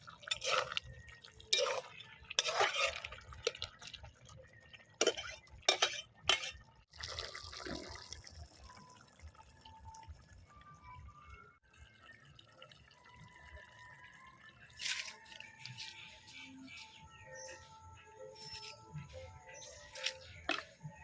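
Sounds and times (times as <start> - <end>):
water splashing and dripping: 0.0 - 10.6, 11.7 - 16.9.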